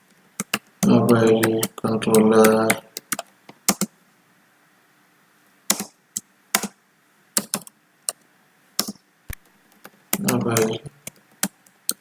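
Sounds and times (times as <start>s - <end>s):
keyboard typing clicks: 0.4s - 3.9s, 5.7s - 6.8s, 7.4s - 8.2s, 8.8s - 12.0s.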